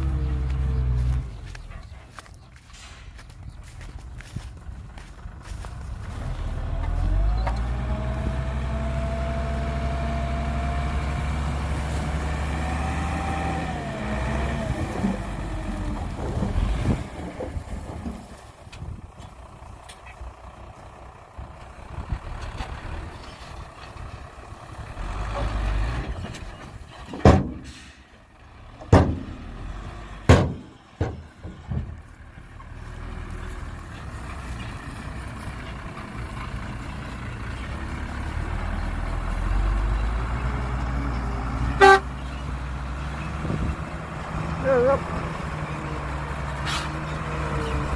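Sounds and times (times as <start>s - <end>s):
heavy truck engine with whine: 0.0s - 47.9s
sharp knocks: 28.9s - 29.4s, 30.3s - 32.0s.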